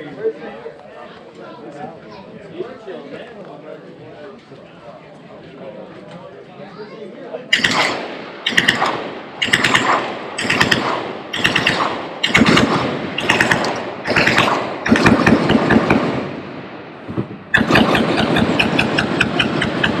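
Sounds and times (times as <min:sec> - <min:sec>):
machine-gun fire: 0:07.5 - 0:16.5, 0:17.5 - 0:20.0.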